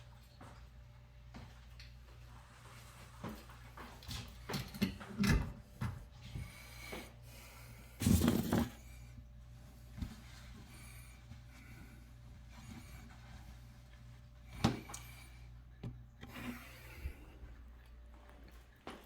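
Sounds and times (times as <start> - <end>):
steady low hum: 5.5 - 19.0.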